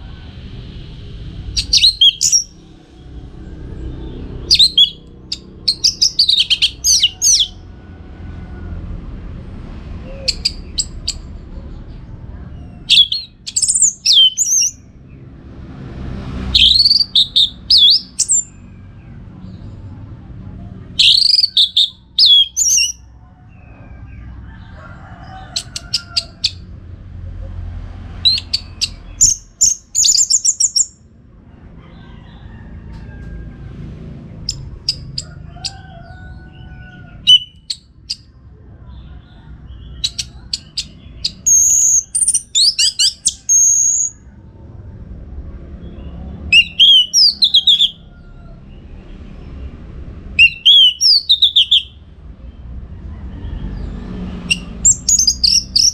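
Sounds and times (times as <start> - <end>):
thrush singing: 0.0 - 24.7, 28.1 - 31.0, 36.5 - 38.3, 45.8 - 48.0, 50.3 - 52.0
low background rumble: 0.0 - 53.8.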